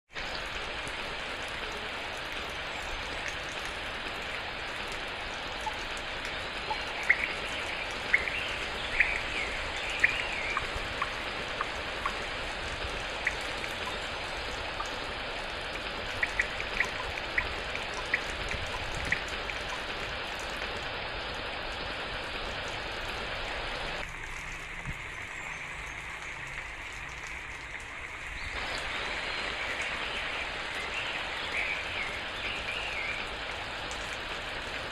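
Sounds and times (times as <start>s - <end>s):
steady rain: 0.1s - 34.9s
drops ticking close by: 1.5s - 21.4s.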